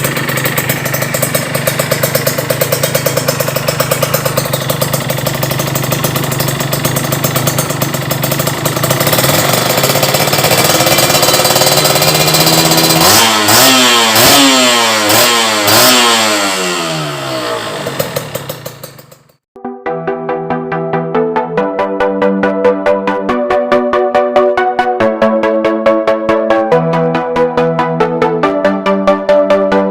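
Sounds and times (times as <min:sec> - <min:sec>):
two-stroke engine revving: 0:00.0 - 0:19.5.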